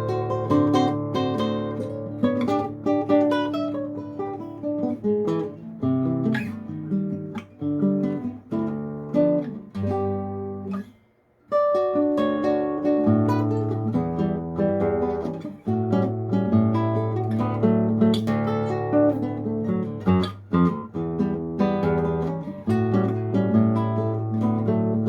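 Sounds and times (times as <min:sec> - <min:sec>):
classical guitar playing: 0:00.0 - 0:25.0.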